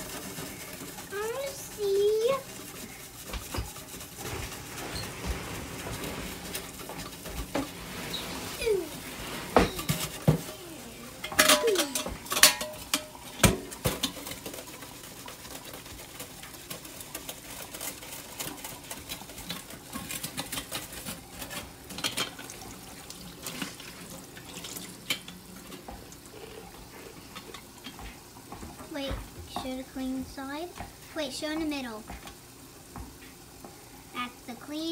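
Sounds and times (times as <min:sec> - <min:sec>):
sponge scrubbing metal pot: 0:00.0 - 0:27.7.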